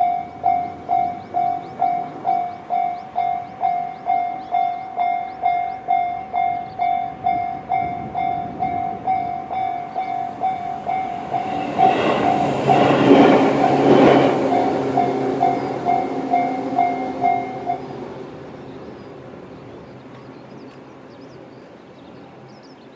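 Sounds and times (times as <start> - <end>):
train wheel clatter: 0.0 - 18.2
electric train passing: 0.0 - 22.9.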